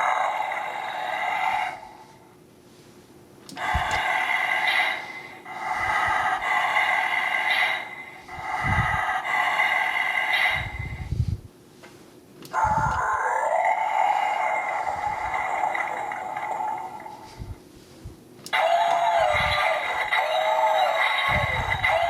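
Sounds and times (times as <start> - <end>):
toy dinosaur roar effects: 0.0 - 2.2, 3.6 - 10.9, 12.5 - 17.3, 18.5 - 22.0.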